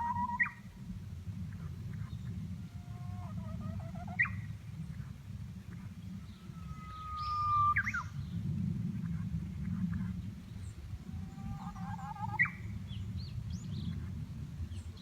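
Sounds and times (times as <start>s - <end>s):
low steady rumble: 0.0s - 15.0s
bush warbler singing: 9.0s - 15.0s.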